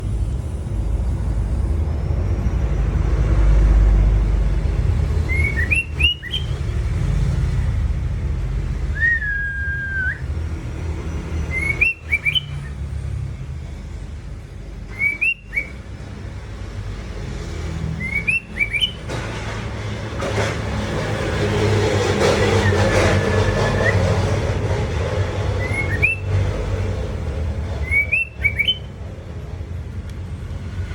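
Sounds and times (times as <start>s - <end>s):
steady low rumble: 0.0s - 5.6s
bird whistling calls: 5.2s - 6.6s, 8.9s - 10.3s, 11.4s - 12.8s, 14.8s - 15.8s, 17.9s - 19.1s, 22.6s - 24.1s, 25.6s - 26.4s, 27.8s - 29.0s.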